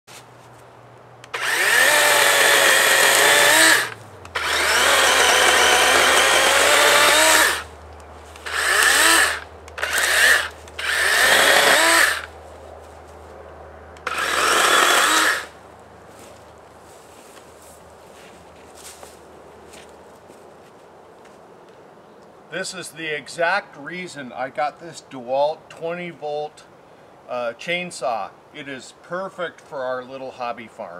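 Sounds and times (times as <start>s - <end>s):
electric chainsaw motor whine: 1.2s - 7.7s, 8.4s - 12.3s, 14.0s - 15.6s.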